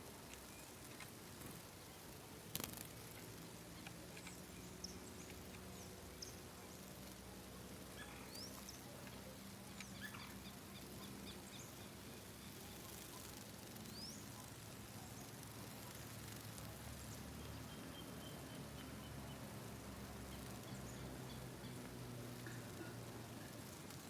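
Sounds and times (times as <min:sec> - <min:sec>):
faint low hum: 0:00.0 - 0:24.0
birds chirping: 0:07.9 - 0:16.1, 0:16.9 - 0:23.7.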